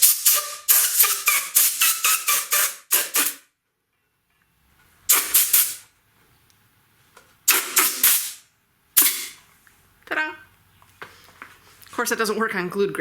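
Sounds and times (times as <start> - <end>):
compressed air blasts hissing: 0.0 - 3.4, 5.1 - 5.9, 7.5 - 8.4, 9.0 - 9.4.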